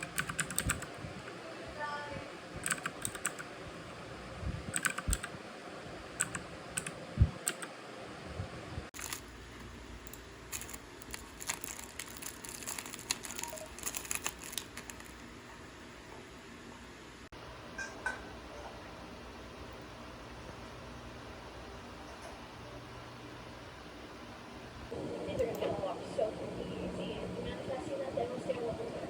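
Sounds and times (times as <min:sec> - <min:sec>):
keyboard typing clicks: 0:00.0 - 0:01.0, 0:02.6 - 0:03.5, 0:04.7 - 0:05.3, 0:06.2 - 0:07.7
low room hum: 0:00.0 - 0:29.0.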